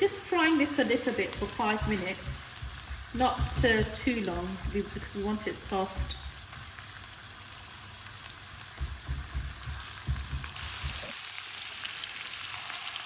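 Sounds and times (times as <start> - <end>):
onion sizzling in a pan: 0.0 - 13.0
low thuds: 1.4 - 6.6.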